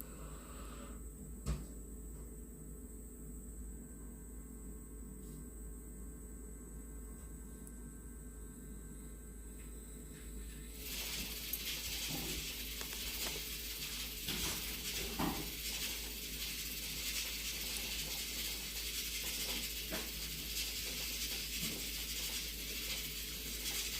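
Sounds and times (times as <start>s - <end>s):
meat sizzling on a griddle: 10.8s - 23.9s.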